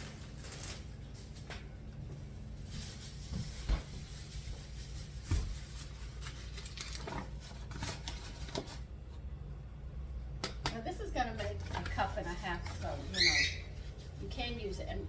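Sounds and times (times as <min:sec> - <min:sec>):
steady low hum: 0:00.0 - 0:15.0
kitchen utensils tapping and scraping: 0:11.0 - 0:14.2.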